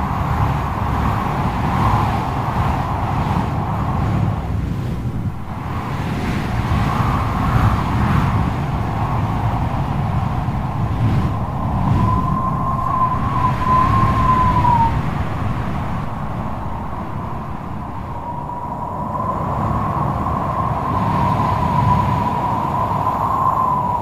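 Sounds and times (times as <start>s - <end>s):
siren-like high tone: 12.0s - 15.0s.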